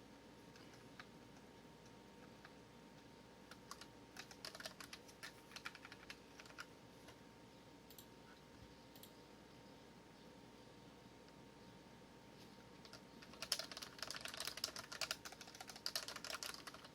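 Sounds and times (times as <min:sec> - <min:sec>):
mechanical keyboard typing: 0:03.5 - 0:06.7, 0:12.8 - 0:16.9.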